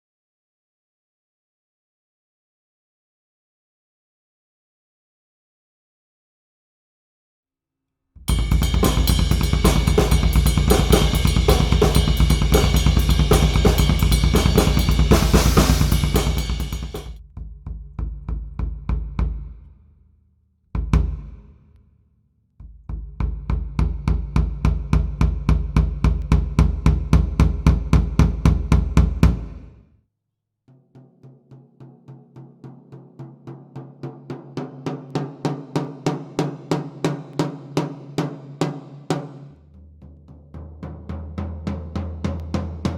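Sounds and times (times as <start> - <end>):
drum kit groove: 8.2 - 17.2, 22.9 - 29.7, 41.7 - 42.9
even strokes on pitched drum: 8.2 - 17.2
deep low drum strokes: 8.2 - 19.6, 22.8 - 29.7, 41.1 - 42.9
crash cymbal ringing: 8.3 - 17.2.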